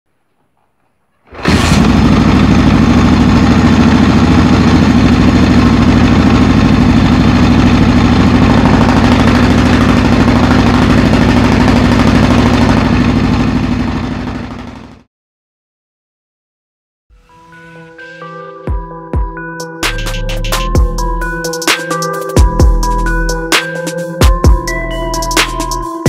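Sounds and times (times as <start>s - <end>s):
motorcycle engine idling: 1.4s - 15.1s.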